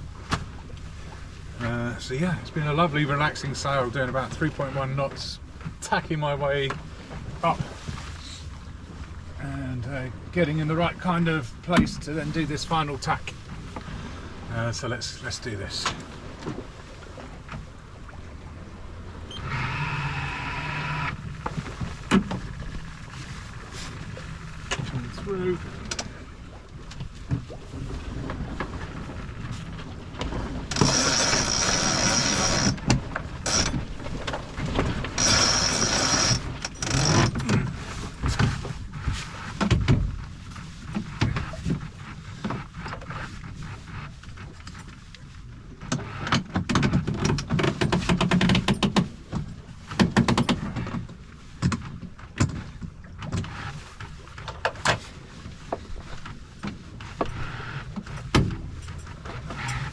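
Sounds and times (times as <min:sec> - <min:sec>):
winch ratcheting: 0:30.7 - 0:37.6.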